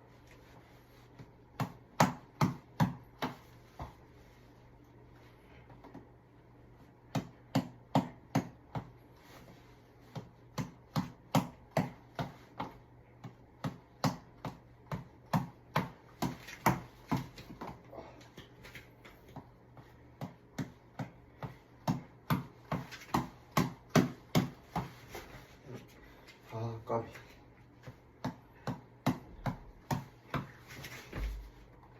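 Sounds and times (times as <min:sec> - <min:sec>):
reflex ball being punched: 0:01.1 - 0:04.1, 0:06.8 - 0:09.2, 0:10.0 - 0:25.4, 0:27.7 - 0:31.9.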